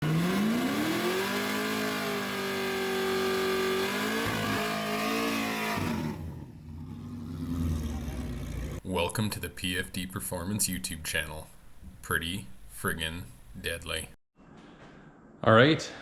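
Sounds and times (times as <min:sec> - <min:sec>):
car engine accelerating: 0:00.0 - 0:08.8.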